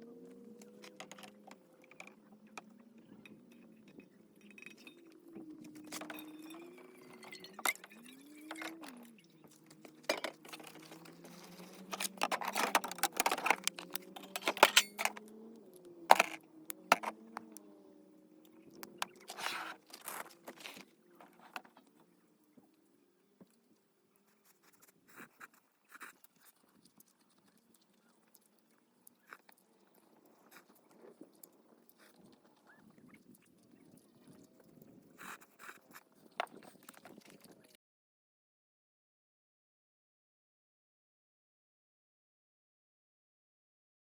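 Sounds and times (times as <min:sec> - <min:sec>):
objects being handled: 0:00.4 - 0:17.6, 0:18.6 - 0:22.0.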